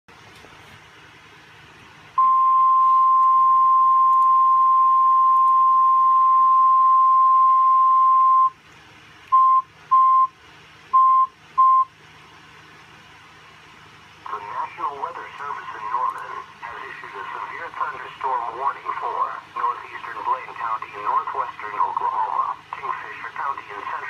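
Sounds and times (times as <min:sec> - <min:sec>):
short beeps: 0:02.2 - 0:08.6, 0:09.3 - 0:10.3, 0:11.0 - 0:11.9.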